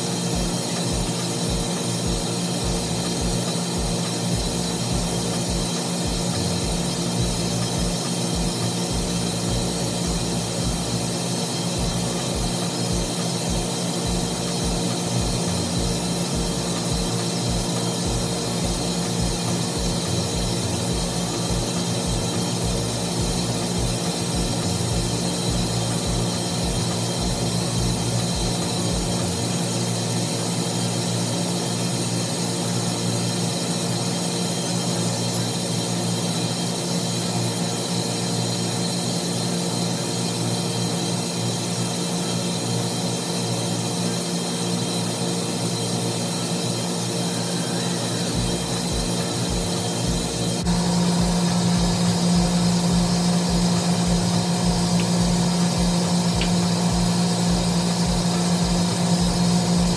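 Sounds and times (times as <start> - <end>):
machinery motor hum and whir: 0.0 - 29.8, 47.1 - 59.9.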